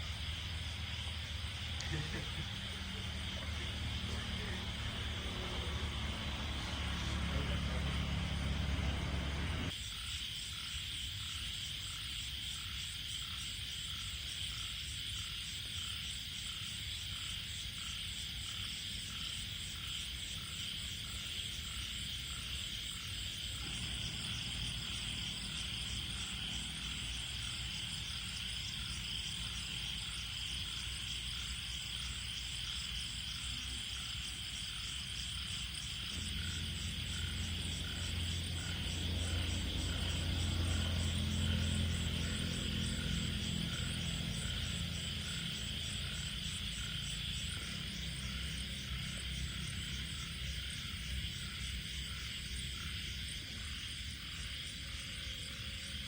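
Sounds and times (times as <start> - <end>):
insects chirring: 0.0 - 56.0
low rumble: 0.7 - 9.7.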